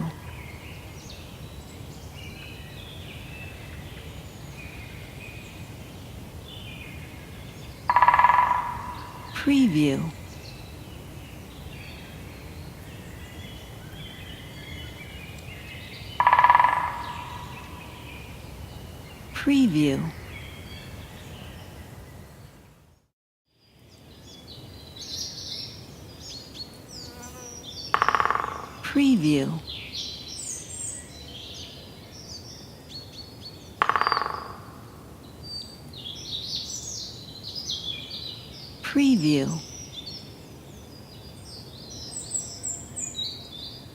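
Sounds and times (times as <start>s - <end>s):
songbirds chirping and trilling: 0.0s - 43.9s
harsh bird call: 7.9s - 10.2s.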